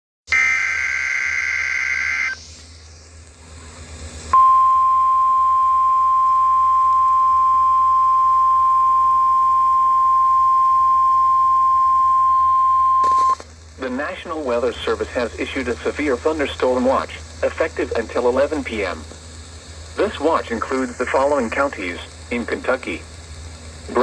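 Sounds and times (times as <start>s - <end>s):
steady alarm tone: 0.3s - 2.6s
warbling data burst: 0.3s - 3.2s, 12.8s - 24.0s
faint radio hiss: 0.3s - 4.4s, 13.1s - 24.0s.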